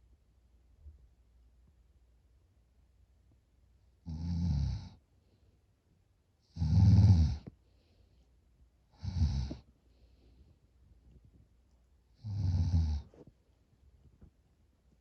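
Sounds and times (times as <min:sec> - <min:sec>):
person snoring loudly: 0:06.5 - 0:07.4, 0:09.0 - 0:09.6, 0:12.2 - 0:13.0.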